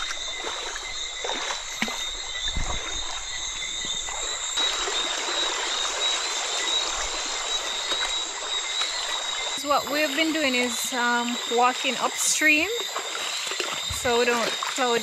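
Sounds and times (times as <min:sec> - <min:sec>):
stream water rushing: 0:04.0 - 0:15.0.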